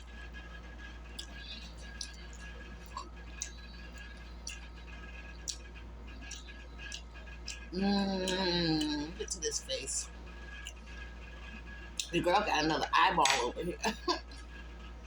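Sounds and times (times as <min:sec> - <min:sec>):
chewing food: 0:00.0 - 0:14.9
steady low hum: 0:00.0 - 0:15.0
mouth clicks and smacks: 0:01.1 - 0:09.4.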